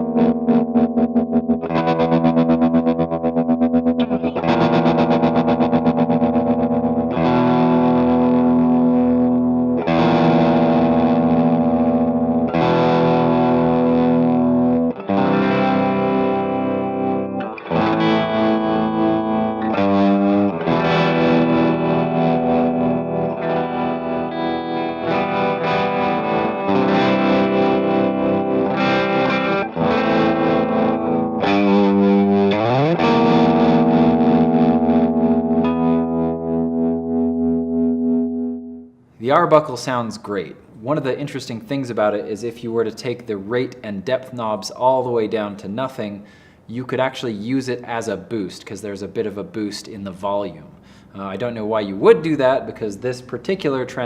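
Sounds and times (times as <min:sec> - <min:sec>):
distorted electric guitar chords: 0:00.0 - 0:39.2.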